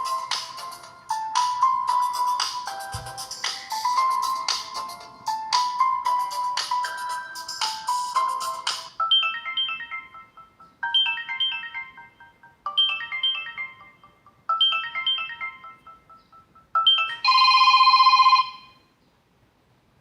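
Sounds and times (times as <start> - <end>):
descending chime ringtone: 6.0 - 18.8.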